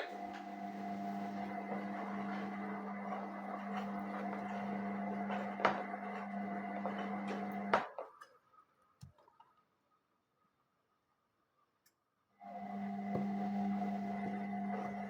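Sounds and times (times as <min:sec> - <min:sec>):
washing machine humming: 0:00.0 - 0:07.8, 0:12.4 - 0:15.0.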